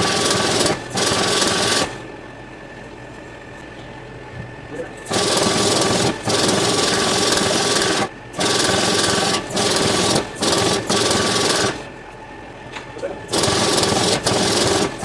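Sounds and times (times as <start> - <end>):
power tool running: 0.0 - 2.1, 5.0 - 11.9, 13.3 - 15.0.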